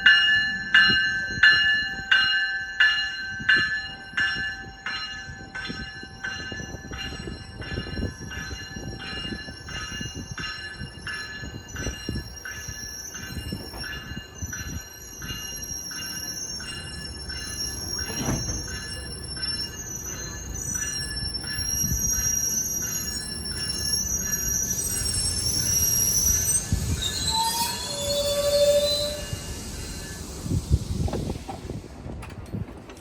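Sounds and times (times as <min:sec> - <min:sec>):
train warning bell ringing: 0:00.0 - 0:31.0
train rumbling: 0:00.0 - 0:33.0
high wheel squeal: 0:12.2 - 0:31.4.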